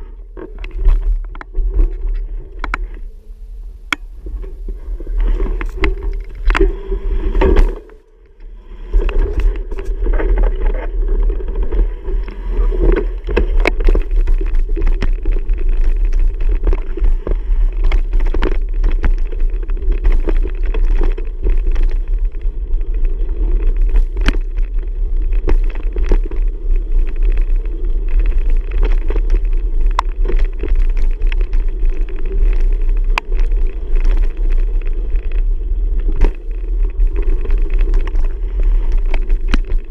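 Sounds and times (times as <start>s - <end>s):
wind rumble on microphone: 0.0s - 39.9s
bicycle clicks and rattles: 5.5s - 6.7s, 9.0s - 17.1s, 17.7s - 39.9s.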